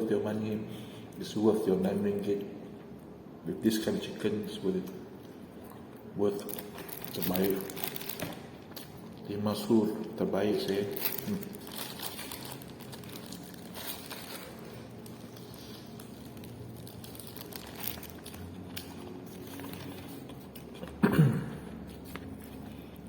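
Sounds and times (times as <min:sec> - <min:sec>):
food packaging crinkling: 0:06.4 - 0:09.3, 0:10.7 - 0:21.0.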